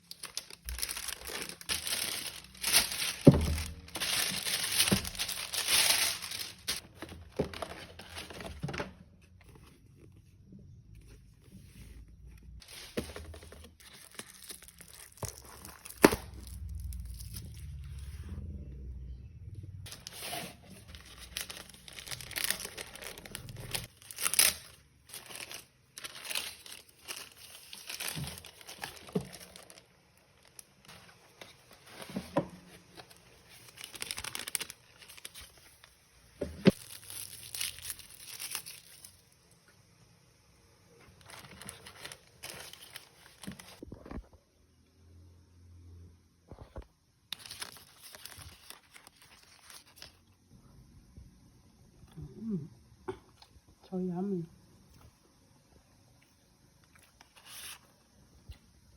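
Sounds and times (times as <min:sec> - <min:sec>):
packaging crinkling and tearing: 0:00.0 - 0:10.1, 0:12.6 - 0:17.8, 0:19.8 - 0:36.0, 0:36.6 - 0:39.3, 0:41.0 - 0:44.1, 0:47.3 - 0:50.4.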